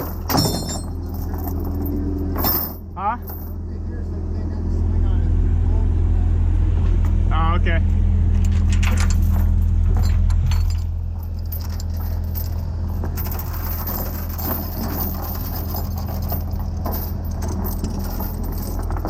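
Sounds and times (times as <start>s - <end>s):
metallic clinks and rattles: 0.0s - 3.6s, 8.4s - 19.0s
diesel engine idling: 0.9s - 14.3s.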